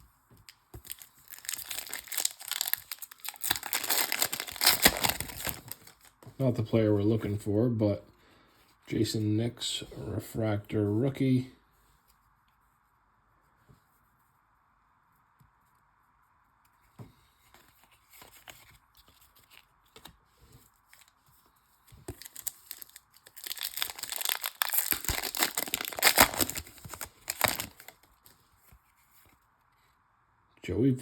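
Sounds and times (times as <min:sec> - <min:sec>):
foil pack tearing open: 0:00.8 - 0:06.1, 0:22.1 - 0:28.1
foil wrapper crinkling: 0:00.8 - 0:06.1, 0:22.0 - 0:28.3.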